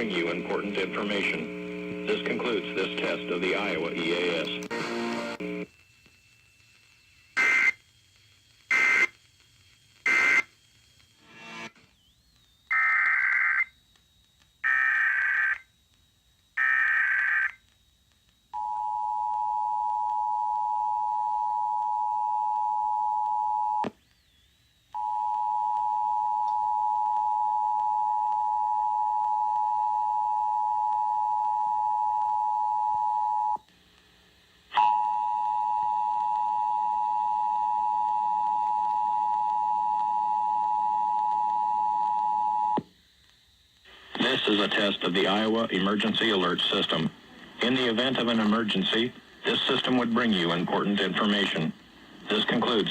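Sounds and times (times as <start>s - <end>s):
digital data bursts: 10.0s - 13.7s, 44.2s - 51.7s.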